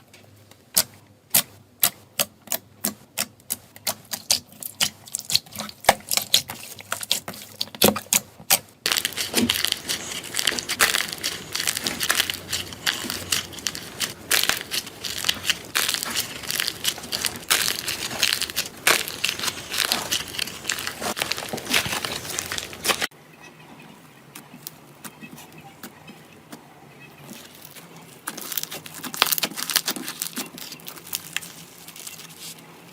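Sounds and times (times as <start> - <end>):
slime crackling when squeezed: 8.9 - 23.1.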